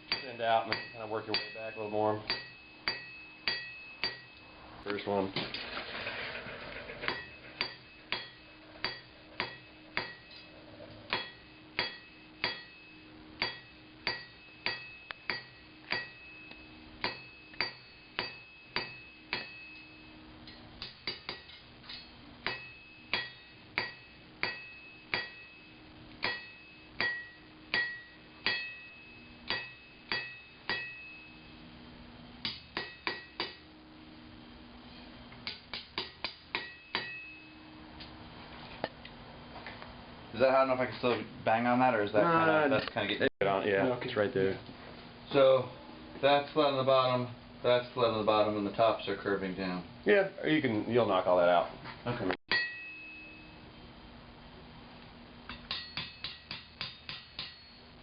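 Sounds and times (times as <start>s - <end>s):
hammer striking steel on anvil: 0.0s - 4.5s, 7.1s - 10.5s, 11.1s - 31.6s, 32.4s - 33.7s, 35.4s - 37.6s, 52.5s - 53.6s, 55.5s - 58.0s.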